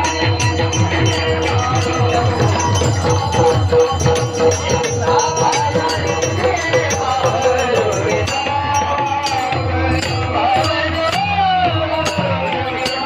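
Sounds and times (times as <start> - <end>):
devotional music: 0.0 - 13.0.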